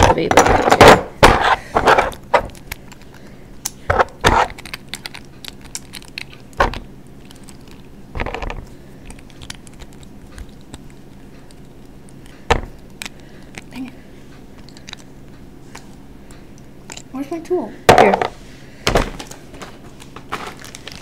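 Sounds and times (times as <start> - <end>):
plastic parts knocking: 0.0 - 2.6.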